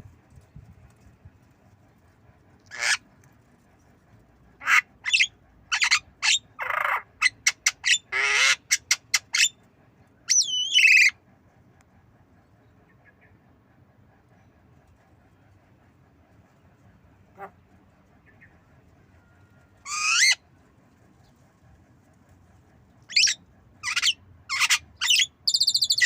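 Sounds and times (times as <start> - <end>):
bird harsh rasping calls: 2.7 - 3.0, 4.6 - 9.6, 10.3 - 11.2, 19.8 - 20.4, 23.1 - 26.0
bird wavering whistled call: 10.3 - 11.2, 19.9 - 20.4, 23.1 - 26.0.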